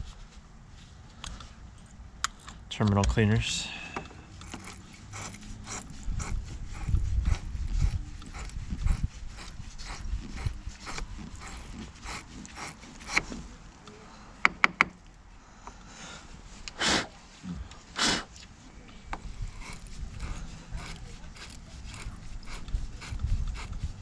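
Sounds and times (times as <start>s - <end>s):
wire brush scraping metal: 4.3s - 13.5s, 19.3s - 24.0s.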